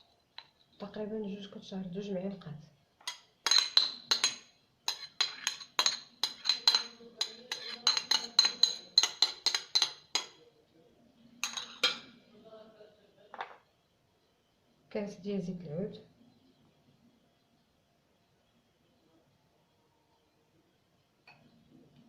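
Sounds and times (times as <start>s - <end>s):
metal spoon clinking against bowl: 3.0s - 10.4s, 11.4s - 12.1s.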